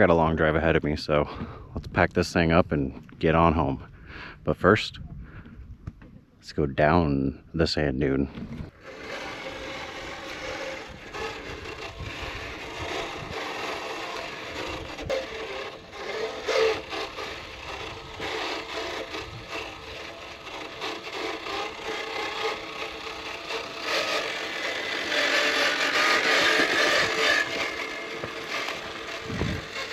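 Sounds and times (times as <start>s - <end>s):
rough driving noise on sand: 8.2s - 29.9s
rc car motor whirring: 8.4s - 29.9s.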